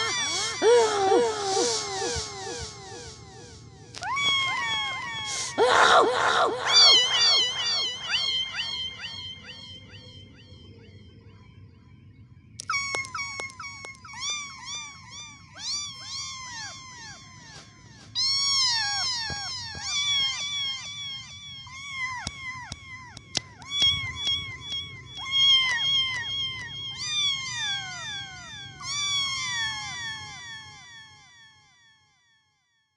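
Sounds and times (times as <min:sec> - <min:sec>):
sharp clicks: 0:12.6 - 0:14.2.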